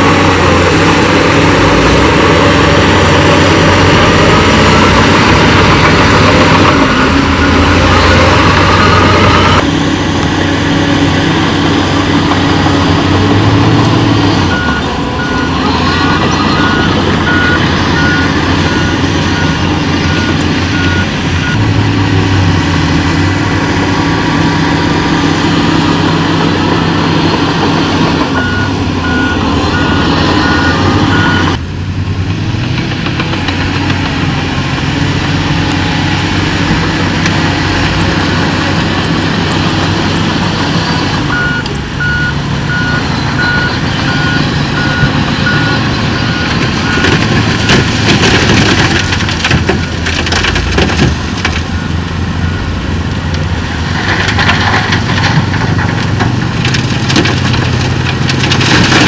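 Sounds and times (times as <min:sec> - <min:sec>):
diesel engines of heavy machinery: 0:00.0 - 0:59.0
reversing alarm beeping: 0:13.6 - 0:21.7, 0:28.4 - 0:31.6, 0:35.5 - 0:48.8, 0:51.7 - 0:52.8.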